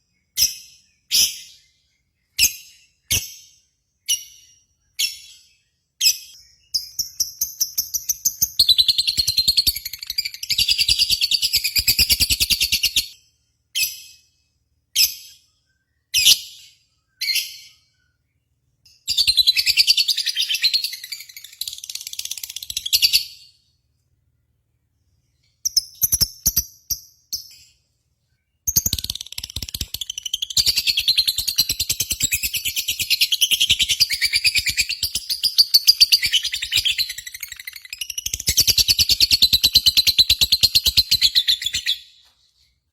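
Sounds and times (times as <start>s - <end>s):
sharp bird chirps: 0.0s - 23.9s, 25.0s - 42.8s
bird singing chattering runs: 28.6s - 41.8s.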